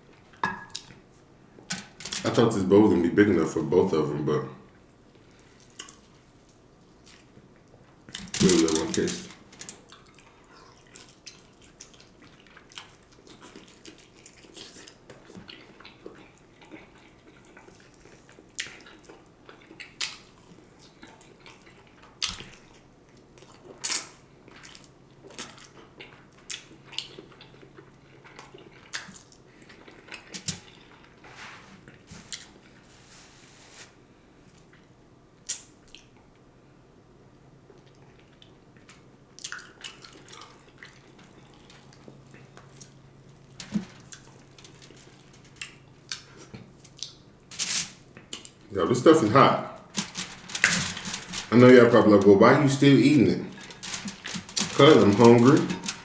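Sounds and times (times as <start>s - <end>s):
wet chewing and smacking: 9.4s - 31.2s, 37.7s - 47.3s.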